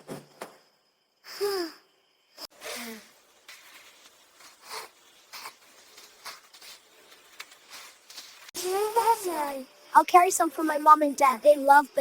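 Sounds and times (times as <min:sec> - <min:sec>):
faint ticks and rustles: 0:03.0 - 0:10.1.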